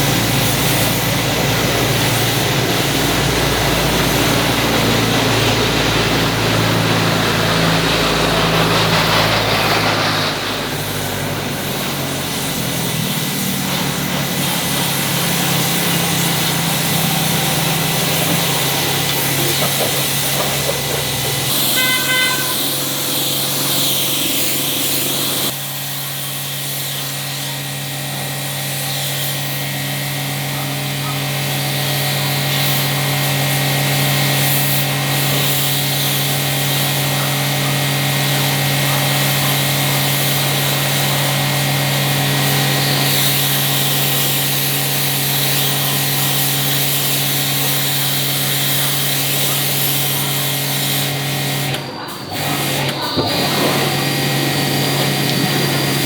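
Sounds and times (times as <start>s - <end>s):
machine running hum: 0.0s - 25.5s
brief high tone: 21.7s - 22.8s.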